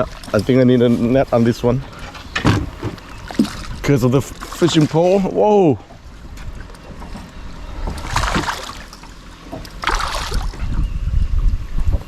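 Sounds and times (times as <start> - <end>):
wind buffeting microphone: 9.5 - 12.0.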